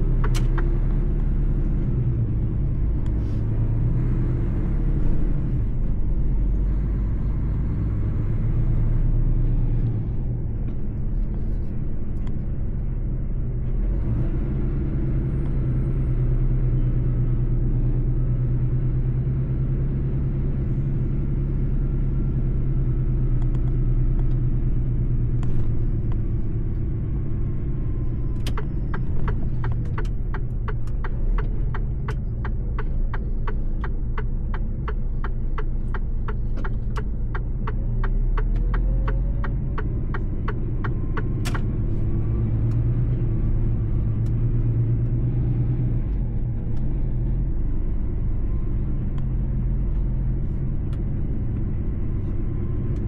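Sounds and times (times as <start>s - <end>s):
diesel truck engine running: 0.0s - 53.0s
low road rumble: 0.0s - 53.0s
even ticking: 28.4s - 41.7s.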